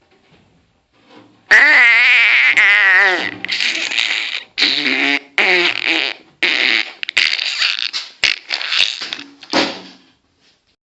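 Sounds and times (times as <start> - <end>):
fart noises: 1.5 - 9.5.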